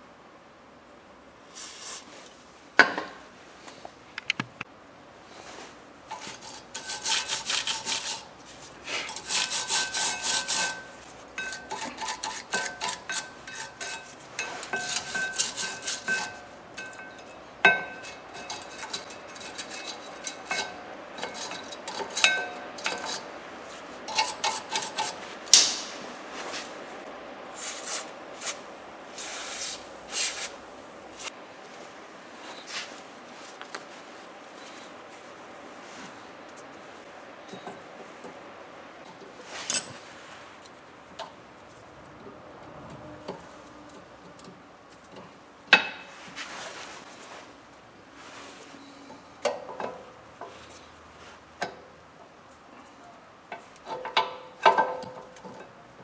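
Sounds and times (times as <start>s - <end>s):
hand tool scraping metal: 6.1s - 25.2s, 39.5s - 40.1s
metallic clinks: 39.7s - 40.0s.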